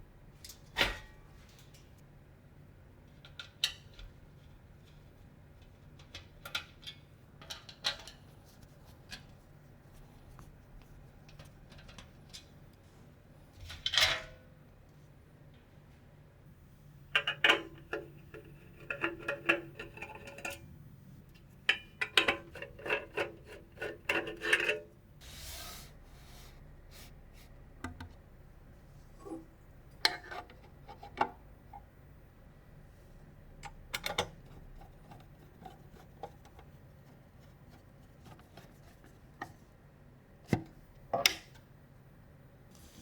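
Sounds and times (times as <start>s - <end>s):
clicks and scrapes of parts handled: 17.2s - 20.6s, 21.3s - 24.9s.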